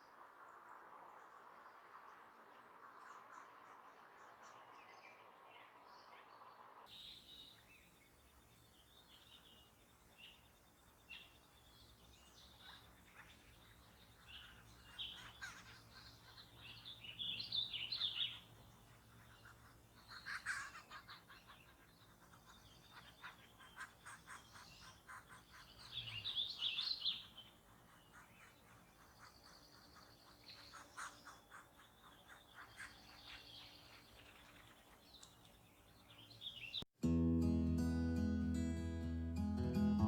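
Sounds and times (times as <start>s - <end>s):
birds chirping and calling: 11.1s - 36.8s.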